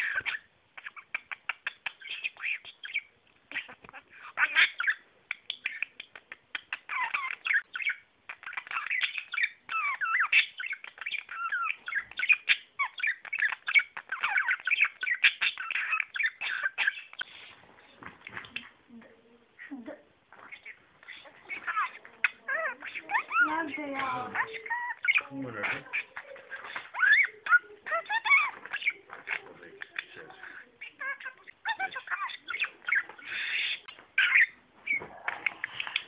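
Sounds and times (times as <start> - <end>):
budgerigar chattering and warbling: 0.0 - 17.6, 20.3 - 36.0.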